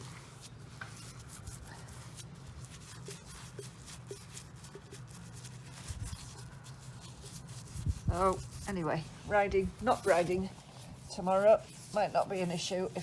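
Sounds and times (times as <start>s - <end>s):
brush scratching on hoof: 0.0s - 13.0s.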